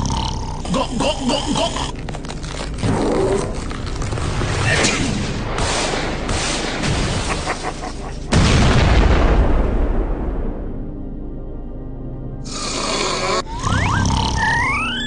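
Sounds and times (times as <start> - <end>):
loud boom: 8.3 - 10.9.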